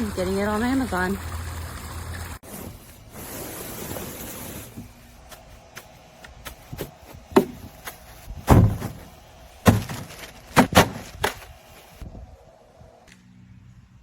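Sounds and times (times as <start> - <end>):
hard objects knocking together: 6.7 - 11.5.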